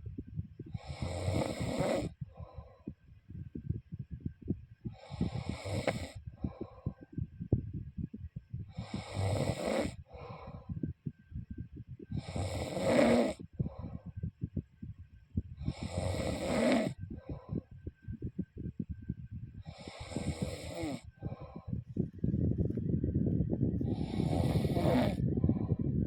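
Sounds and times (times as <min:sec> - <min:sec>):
person snoring: 0:00.8 - 0:02.2, 0:04.9 - 0:06.2, 0:08.7 - 0:10.0, 0:12.2 - 0:13.4, 0:15.6 - 0:17.0, 0:19.7 - 0:21.1, 0:23.8 - 0:25.2.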